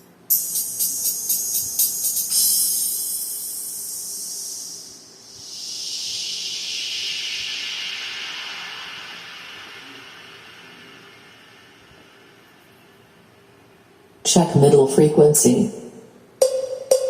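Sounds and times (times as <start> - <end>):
high-frequency test signal hiss: 0.0 - 14.1
hiss sweeping downward in pitch: 0.3 - 13.5.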